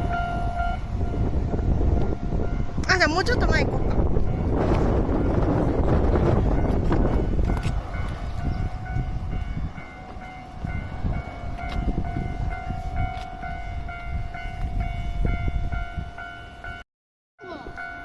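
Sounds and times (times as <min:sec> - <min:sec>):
wind rumble on microphone: 0:00.0 - 0:16.8.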